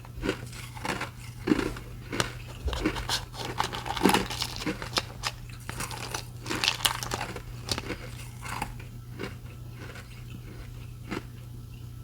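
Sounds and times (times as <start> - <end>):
ice crunching: 0.2 - 8.9.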